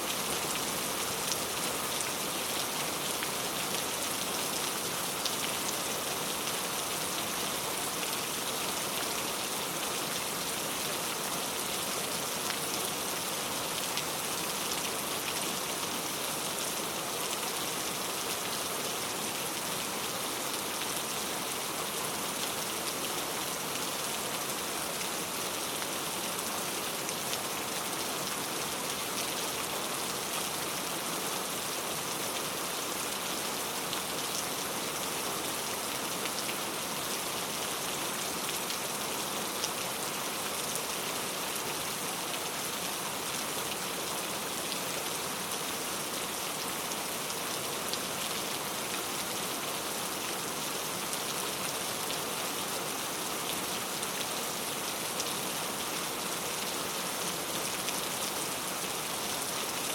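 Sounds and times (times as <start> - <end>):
very heavy rain: 0.0 - 59.9.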